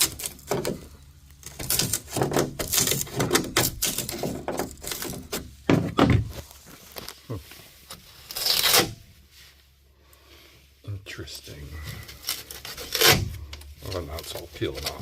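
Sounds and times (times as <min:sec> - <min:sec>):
chisel scraping fiberglass: 0:00.0 - 0:05.6, 0:07.9 - 0:09.1, 0:11.9 - 0:15.0.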